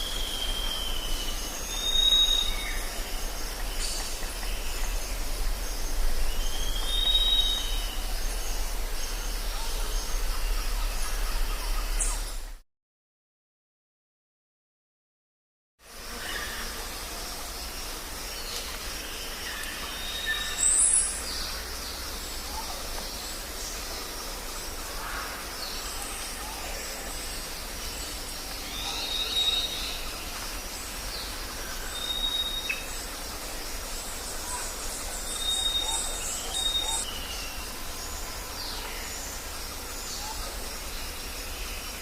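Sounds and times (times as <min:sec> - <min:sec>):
background hiss: 0:00.0 - 0:12.6, 0:15.8 - 0:42.0
birds chirping: 0:17.6 - 0:42.0.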